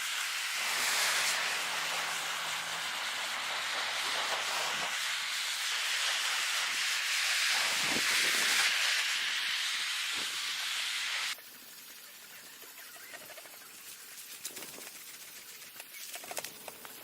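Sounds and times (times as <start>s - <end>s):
gas blowtorch hissing: 0.0s - 11.4s.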